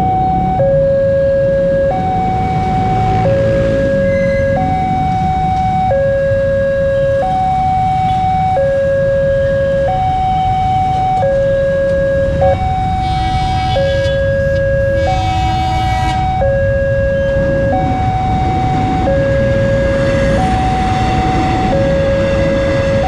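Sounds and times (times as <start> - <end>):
two-tone level-crossing alarm: 0.0 - 23.0
low rumble: 16.0 - 23.0.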